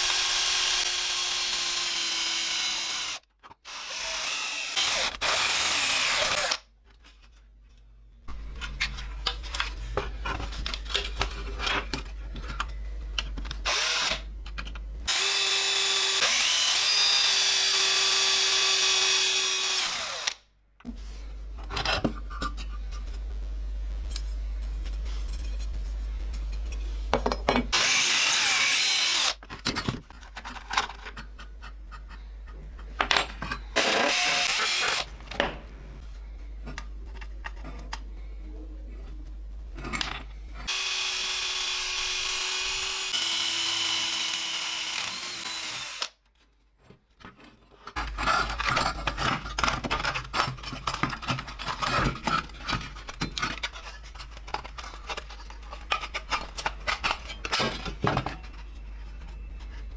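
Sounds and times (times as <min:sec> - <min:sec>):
power tool motor: 0:00.0 - 0:06.6, 0:15.1 - 0:20.4, 0:27.7 - 0:29.4, 0:33.8 - 0:35.1, 0:40.7 - 0:46.2.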